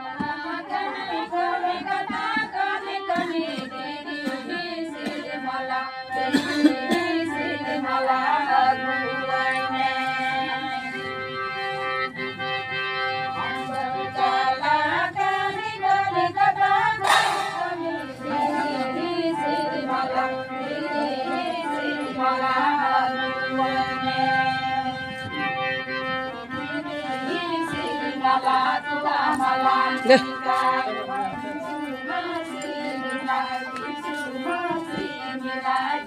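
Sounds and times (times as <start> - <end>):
voices singing: 0.0 - 11.2, 13.0 - 36.0
sustained instrumental drone: 0.1 - 36.0
sharp percussive hit: 17.0 - 17.8.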